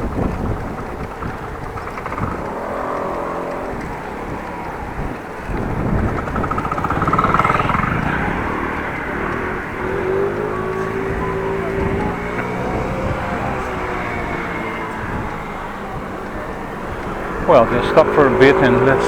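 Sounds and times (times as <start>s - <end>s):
vehicles passing close by: 0.0s - 19.0s
wind buffeting microphone: 0.0s - 19.0s.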